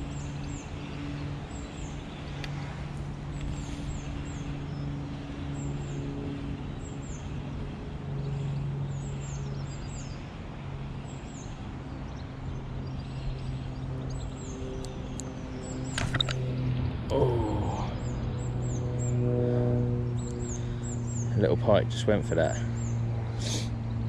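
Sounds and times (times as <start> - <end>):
small birds chirping: 0.0 - 7.5, 8.2 - 19.2, 20.1 - 24.0
low engine hum: 0.0 - 24.0.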